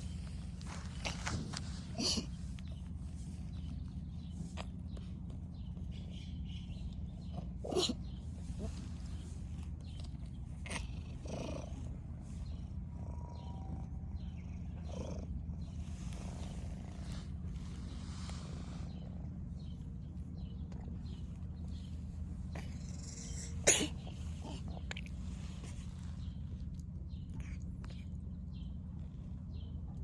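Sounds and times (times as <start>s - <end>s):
cat purring: 7.0s - 20.0s, 20.6s - 26.2s.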